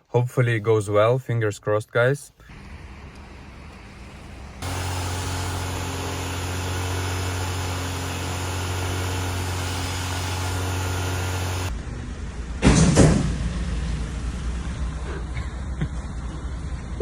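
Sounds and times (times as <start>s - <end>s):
car engine humming: 2.4s - 12.6s.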